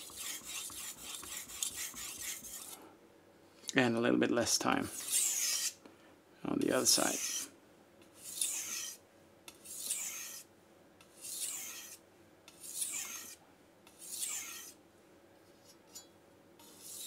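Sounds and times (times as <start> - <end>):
knife sharpening on whetstone: 0.0 - 2.8, 4.9 - 5.8, 7.0 - 7.5, 8.2 - 10.5, 11.1 - 14.8, 15.7 - 17.0.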